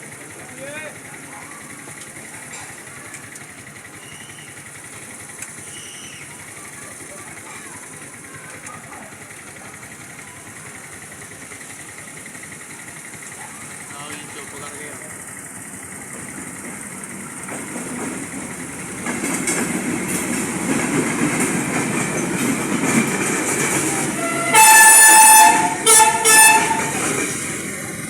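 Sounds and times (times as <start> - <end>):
train wheels rumbling on rails: 0.0 - 28.0
train horn blasts: 24.1 - 27.2.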